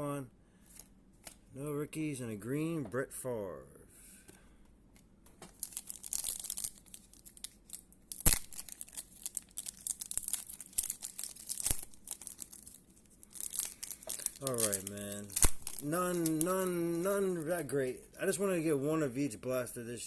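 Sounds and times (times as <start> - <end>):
foil wrappers crinkling and tearing: 5.5 - 17.8.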